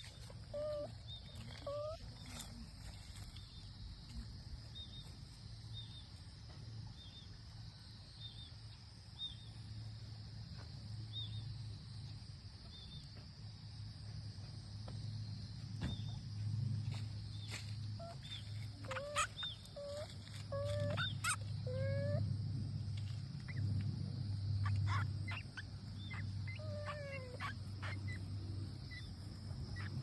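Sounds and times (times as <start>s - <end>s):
animal squeaks and chirps: 0.0s - 2.6s, 18.0s - 22.2s, 24.6s - 29.1s, 29.7s - 30.0s
steady low hum: 13.5s - 30.0s.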